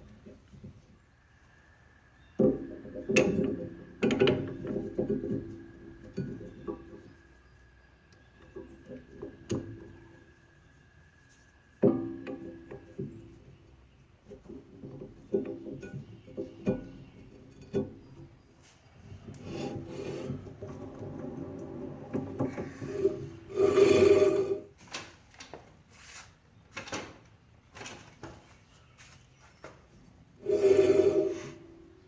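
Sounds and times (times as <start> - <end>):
metal clicks and knocks: 2.4 - 7.2, 11.8 - 13.6, 14.2 - 18.4
metal scraping and rubbing: 19.0 - 24.7, 30.4 - 32.0.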